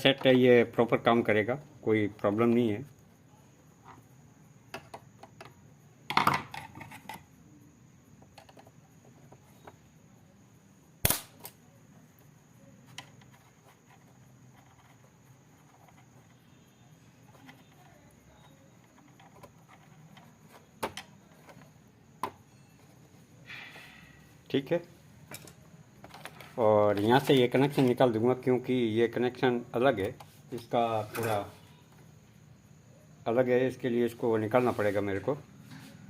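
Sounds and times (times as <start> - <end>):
faint high-pitched tone: 15.8 - 19.5, 22.4 - 24.8
clicks and knocks of tools: 25.3 - 27.1.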